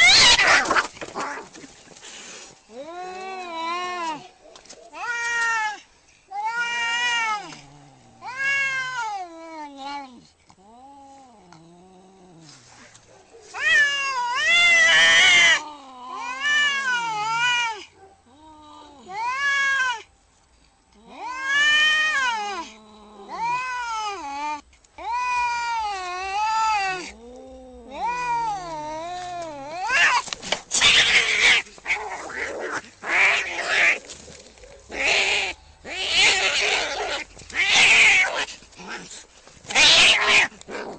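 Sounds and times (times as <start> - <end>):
cat yowling: 0.0 - 1.4, 13.6 - 20.1, 21.1 - 34.0, 34.8 - 39.0, 39.7 - 40.6
cat hissing: 28.0 - 34.0, 34.9 - 40.9.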